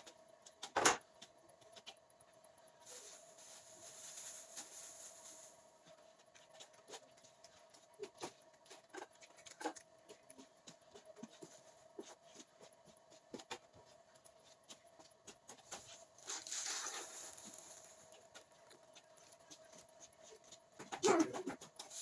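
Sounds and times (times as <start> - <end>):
faint steady hum: 0.0 - 22.0
hissing rustle: 2.8 - 5.6, 16.1 - 18.3.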